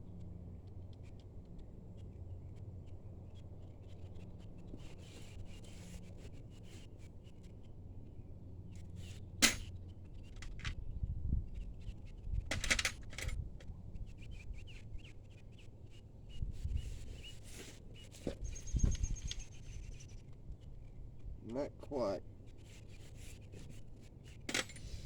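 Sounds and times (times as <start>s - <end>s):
short metal rattle: 9.4s - 9.7s.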